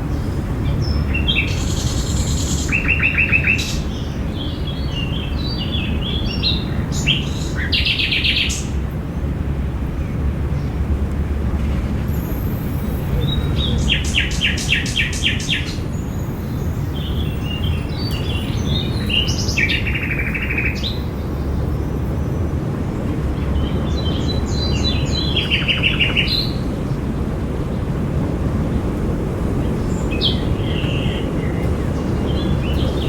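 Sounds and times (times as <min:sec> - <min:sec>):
songbirds singing: 0:00.0 - 0:33.0.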